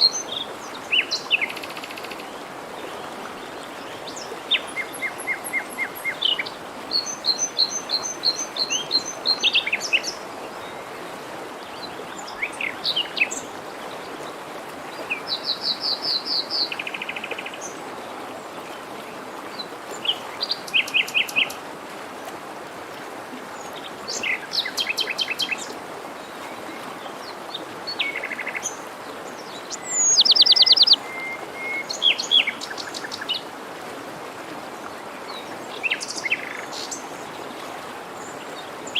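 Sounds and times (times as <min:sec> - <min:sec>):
forest stream rushing: 0:00.0 - 0:38.9
songbirds singing and trilling: 0:26.8 - 0:33.4.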